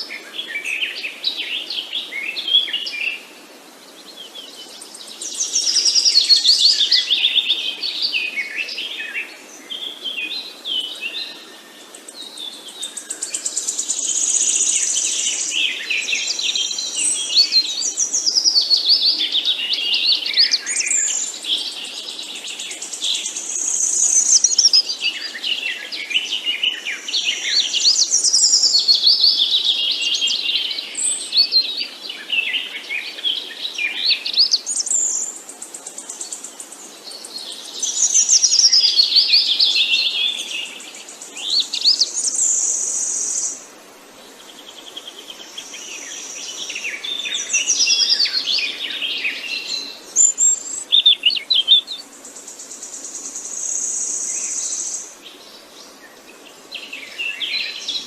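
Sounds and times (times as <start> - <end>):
songbirds chirping and singing: 0.0 - 58.0.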